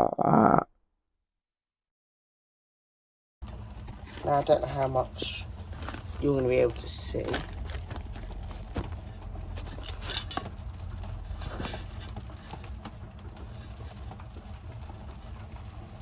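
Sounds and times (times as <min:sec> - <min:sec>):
steady low hum: 0:03.4 - 0:16.0.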